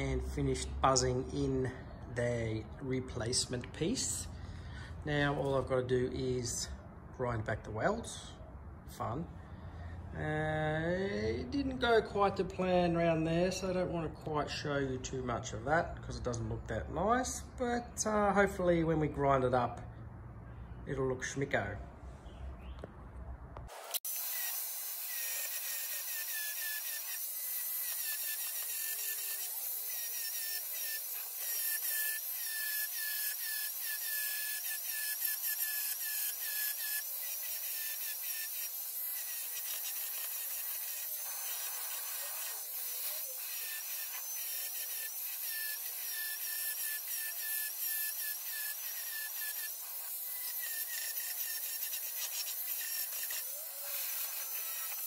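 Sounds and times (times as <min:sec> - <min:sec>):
grinder grinding steel: 0:23.7 - 0:55.0.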